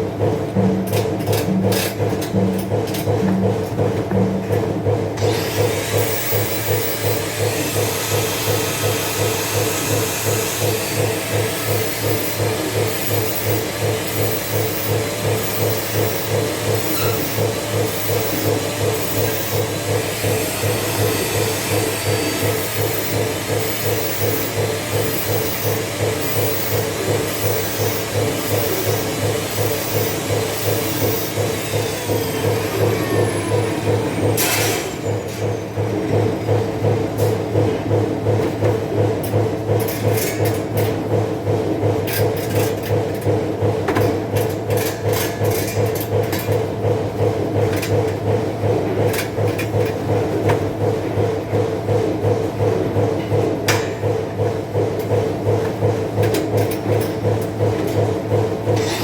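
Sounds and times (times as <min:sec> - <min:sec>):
welding arc crackling buzz: 0:05.3 - 0:35.0.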